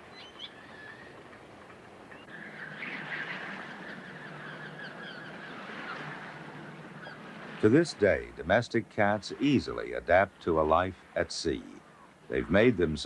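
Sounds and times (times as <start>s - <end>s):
flock of birds calling: 0.0s - 7.8s
steady background hiss: 0.0s - 13.0s.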